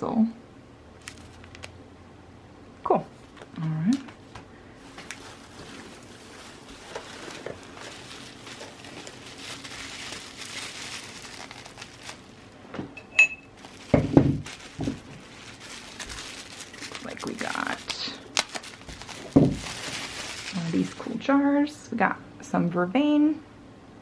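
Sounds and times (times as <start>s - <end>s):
packaging rustling: 1.0s - 1.7s, 3.1s - 12.9s, 13.5s - 21.2s
knocks: 14.0s - 15.0s.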